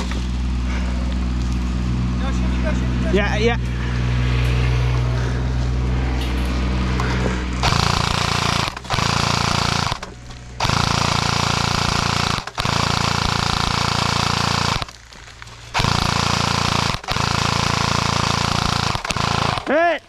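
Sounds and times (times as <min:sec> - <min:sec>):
airsoft gun full-auto bursts: 0:07.6 - 0:15.0, 0:15.7 - 0:19.9.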